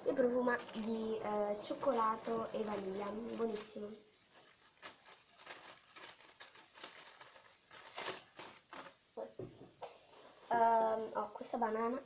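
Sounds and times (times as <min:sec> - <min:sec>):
foam toys crinkling and rustling: 0:00.0 - 0:09.0.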